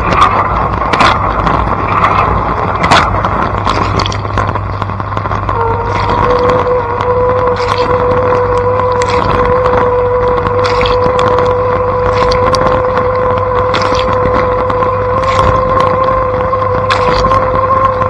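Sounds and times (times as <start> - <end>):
pump motor hum: 0.0 - 18.0
spray splashes: 7.5 - 12.9.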